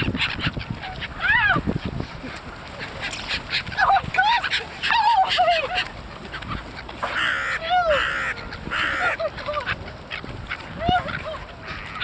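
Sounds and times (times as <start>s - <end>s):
waterfowl honking: 3.3s - 12.0s.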